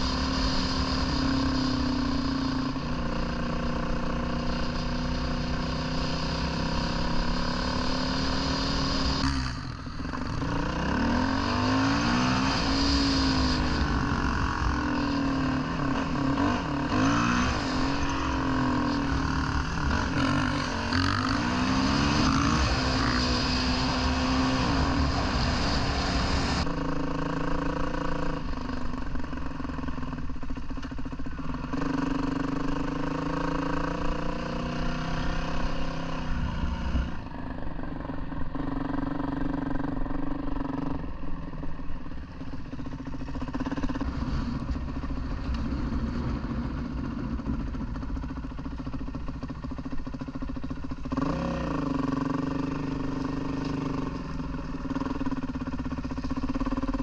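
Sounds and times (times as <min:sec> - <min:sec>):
wind rumble: 0:00.0 - 0:27.2, 0:34.4 - 0:51.1
dirt bike engine revving: 0:00.0 - 0:30.2, 0:31.4 - 0:37.3, 0:38.0 - 0:57.0.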